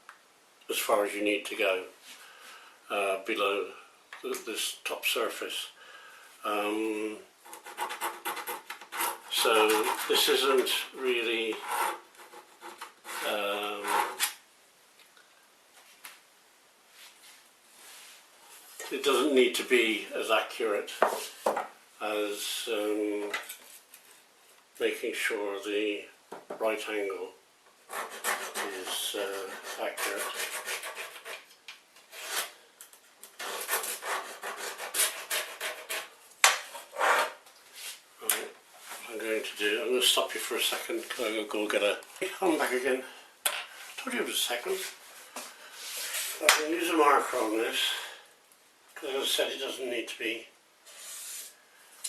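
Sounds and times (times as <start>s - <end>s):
pencil scratching on wood: 7.5s - 10.4s, 11.5s - 14.3s, 27.9s - 31.5s, 33.4s - 36.1s
man's voice: 18.9s - 20.9s.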